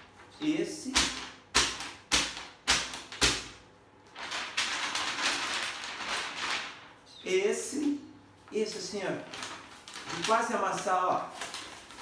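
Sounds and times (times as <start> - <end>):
paper rustling: 0.0 - 7.0, 7.8 - 12.0
paper sheet snapping: 0.8 - 3.6.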